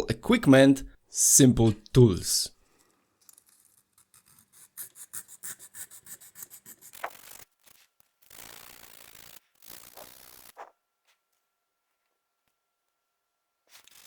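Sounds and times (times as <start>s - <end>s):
sandpaper rubbing on metal: 8.3s - 10.7s.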